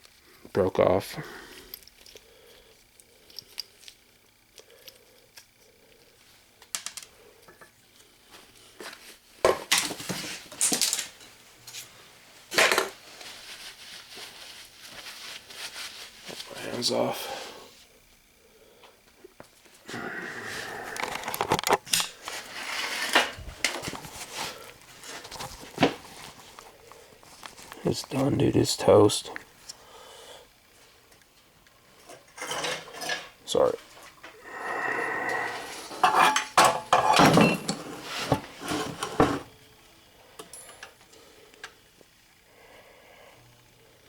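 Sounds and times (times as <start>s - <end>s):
ratchet grinding scrape: 21.0s - 23.4s.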